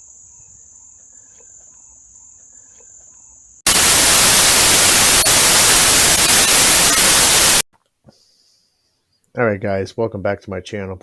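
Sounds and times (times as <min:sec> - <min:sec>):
loud burst of white-noise static: 0:03.7 - 0:07.6.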